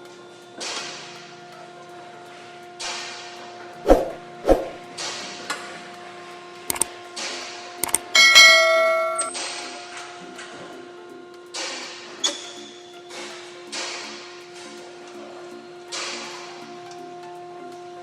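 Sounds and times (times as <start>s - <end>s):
metal tools knocking and clinking: 8.2s - 9.3s
loud ringing metal clang: 8.2s - 9.5s.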